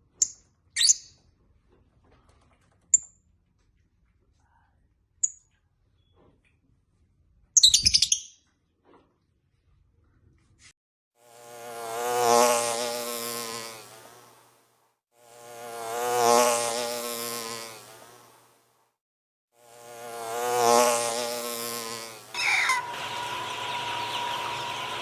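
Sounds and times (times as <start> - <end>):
flying insect buzzing: 11.2 - 14.5, 15.2 - 18.5, 19.6 - 25.0.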